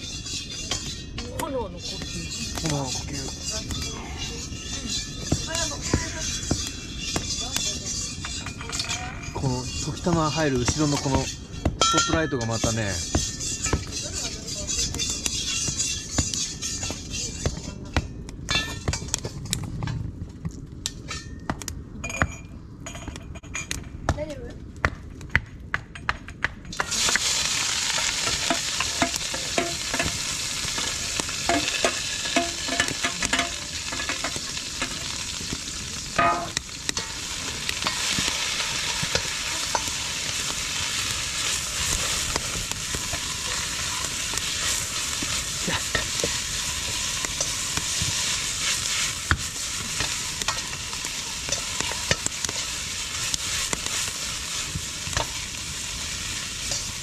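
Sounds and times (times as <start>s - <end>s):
food sizzling in a wok: 0.0s - 17.7s, 26.7s - 57.0s
spatula clattering against wok: 28.0s - 35.2s.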